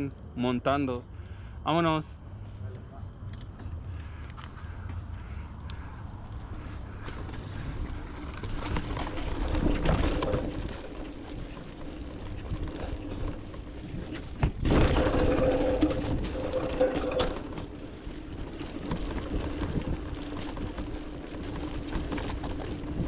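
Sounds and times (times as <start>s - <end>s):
bike rattling over ground: 5.8s - 23.0s.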